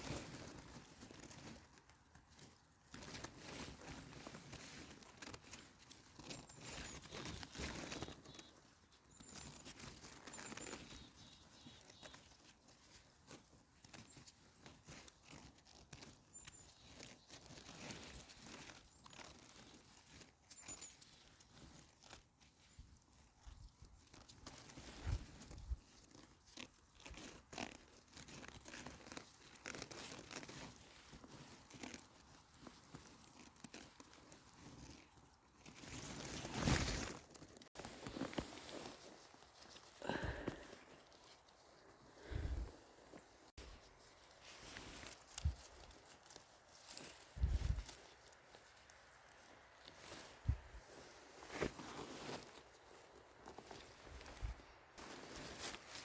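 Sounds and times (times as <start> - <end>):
rustling of forest-floor litter: 0.0 - 56.0
faint bird chirps: 6.5 - 9.6, 10.3 - 12.5, 20.5 - 21.1.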